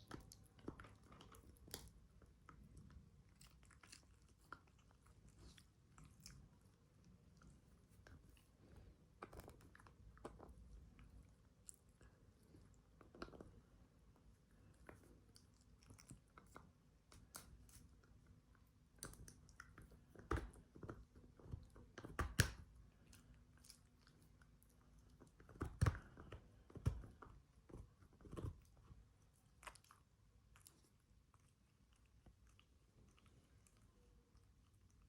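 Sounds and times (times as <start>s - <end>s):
dog crunching a treat: 19.0s - 28.9s.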